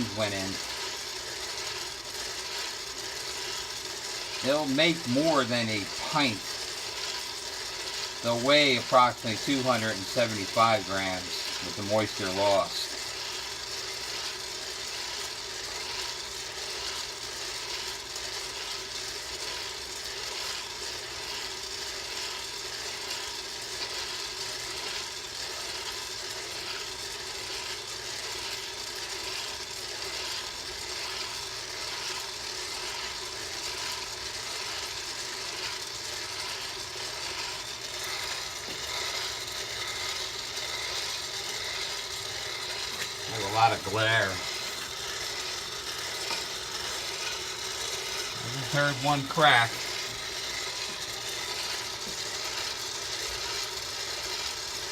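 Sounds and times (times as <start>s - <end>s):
coffee beans rattling: 0.0s - 54.9s
coffee roaster running: 0.0s - 54.9s
mechanism clattering: 10.4s - 54.9s.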